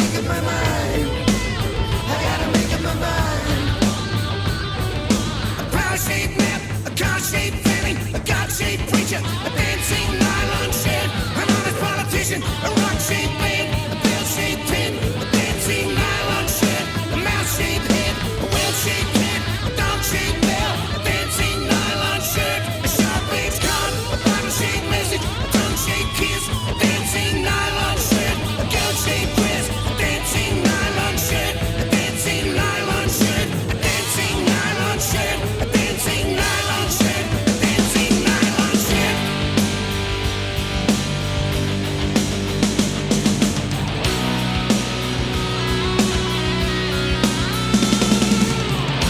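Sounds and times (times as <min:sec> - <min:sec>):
person singing: 0:00.0 - 0:04.5, 0:05.5 - 0:39.8
drums: 0:00.0 - 0:49.0
electric guitars: 0:00.0 - 0:49.0
hard rock band playing: 0:00.0 - 0:49.0.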